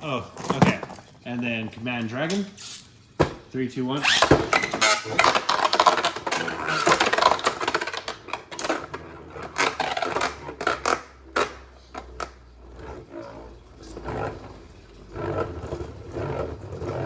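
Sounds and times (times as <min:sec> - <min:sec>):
spinning tops clattering in plastic arena: 0:04.0 - 0:14.7.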